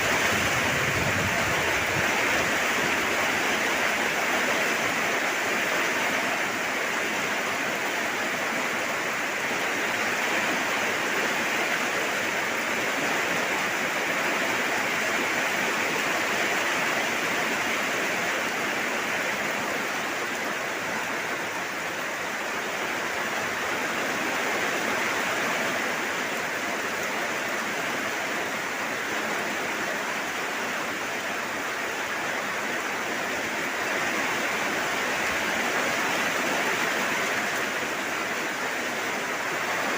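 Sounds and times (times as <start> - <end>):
heavy rainfall: 0.0 - 39.9.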